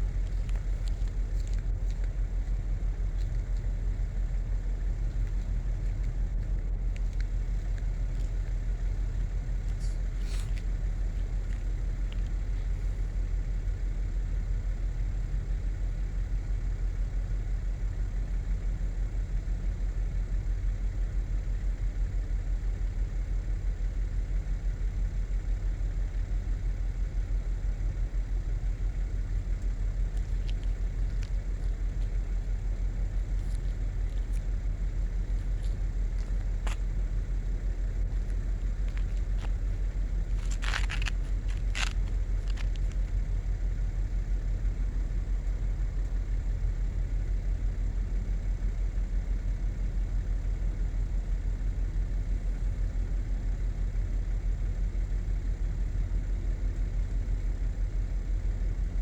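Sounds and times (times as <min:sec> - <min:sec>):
steady low rumble: 0:00.0 - 0:59.0
faint clicks: 0:29.1 - 0:43.3.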